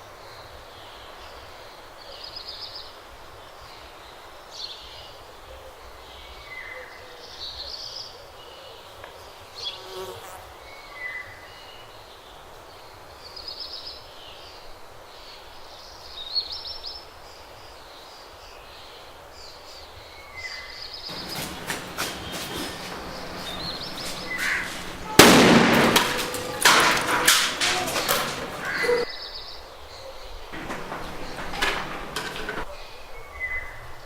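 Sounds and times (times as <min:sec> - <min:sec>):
firecracker crackling pops: 0:21.1 - 0:29.0
firecracker loud blast: 0:21.1 - 0:29.0
birds chirping: 0:21.1 - 0:29.1, 0:30.2 - 0:32.9.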